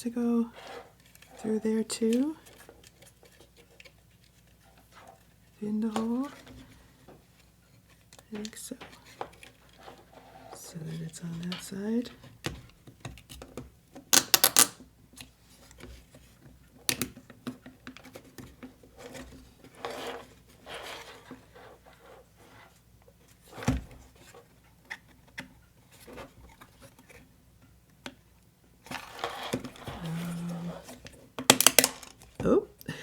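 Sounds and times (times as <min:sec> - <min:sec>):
small parts clicking and tapping: 0:31.4 - 0:32.4.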